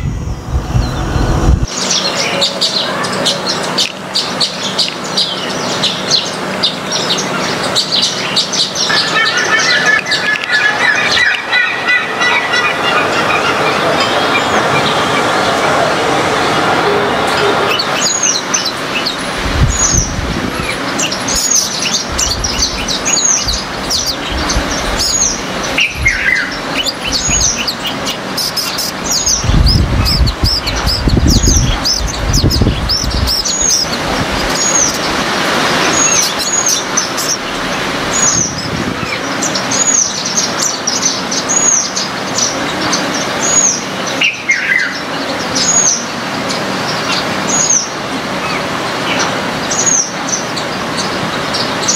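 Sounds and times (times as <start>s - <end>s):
low rumble: 0.0s - 1.8s
birds chirping: 0.0s - 51.9s.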